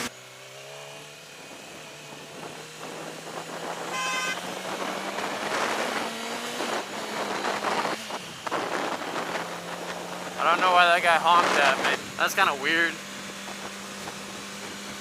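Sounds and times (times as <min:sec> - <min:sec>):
vehicle horn honking: 0:03.8 - 0:04.6.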